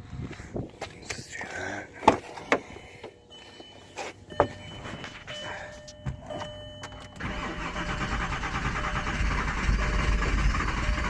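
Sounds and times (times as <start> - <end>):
engine cranking without starting: 7.2 - 11.0.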